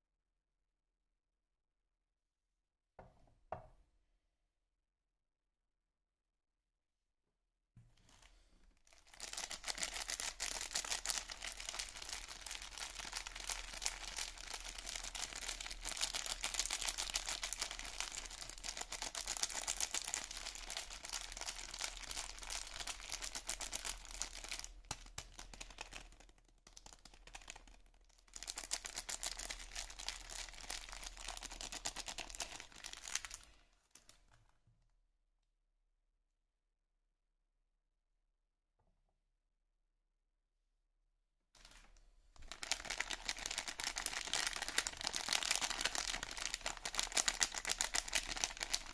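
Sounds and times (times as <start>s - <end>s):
wrapper crinkling and tearing: 8.0s - 34.3s, 41.6s - 48.9s.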